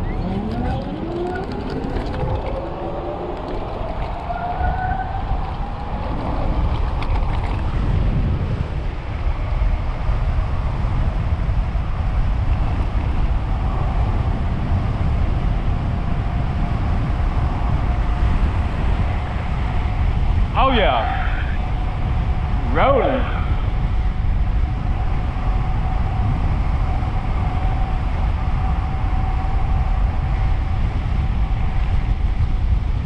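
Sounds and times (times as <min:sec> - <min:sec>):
electric motor whine: 0:00.0 - 0:04.3
wind buffeting microphone: 0:00.0 - 0:33.0.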